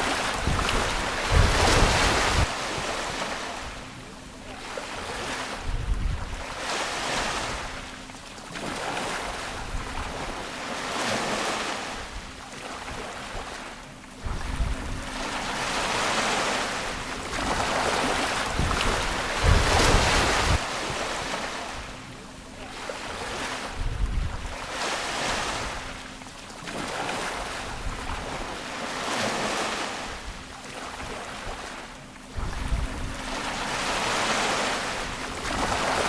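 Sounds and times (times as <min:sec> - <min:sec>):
wind buffeting microphone: 0:00.0 - 0:03.8, 0:05.6 - 0:06.6, 0:09.2 - 0:10.4, 0:14.2 - 0:15.2, 0:16.9 - 0:22.0, 0:23.7 - 0:24.7, 0:27.4 - 0:28.6, 0:32.3 - 0:33.3
ocean waves breaking on shore: 0:00.0 - 0:36.0.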